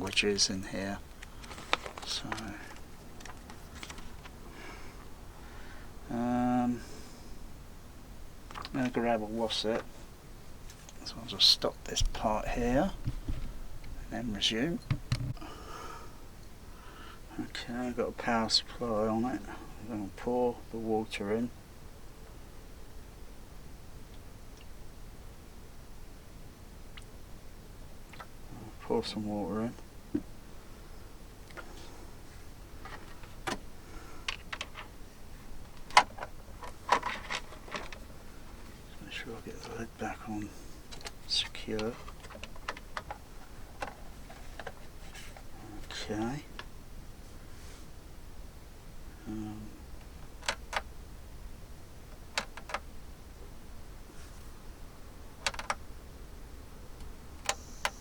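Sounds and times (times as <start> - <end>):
steady low hum: 0.0 - 58.0
plastic tank and lid clicks and knocks: 14.8 - 15.4.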